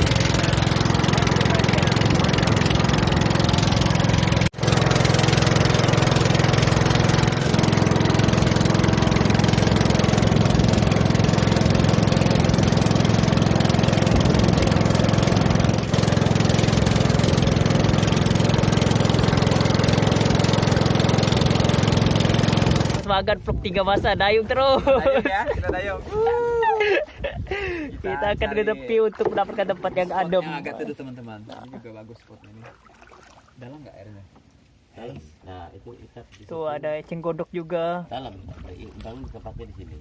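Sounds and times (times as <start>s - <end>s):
small boat motor running: 0.0s - 23.1s.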